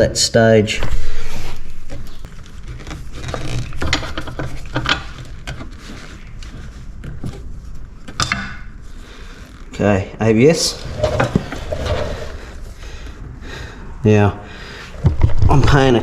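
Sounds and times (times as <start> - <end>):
metal parts clicking and knocking: 2.8 - 5.7, 8.1 - 8.6.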